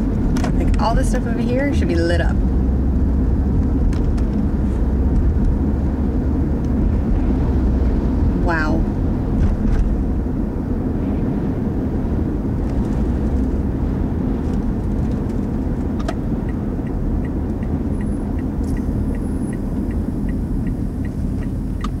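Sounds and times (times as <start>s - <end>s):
low rumble inside car cabin: 0.0s - 22.0s
indicator relay ticking: 16.4s - 22.0s.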